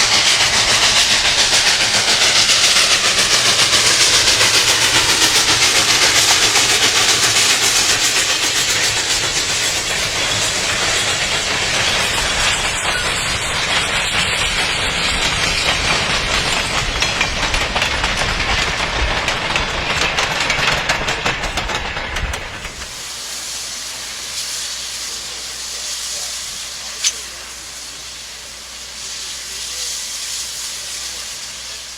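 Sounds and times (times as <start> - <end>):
train wheel clicks: 0.0 - 23.0
train rushing on tracks: 0.0 - 31.9.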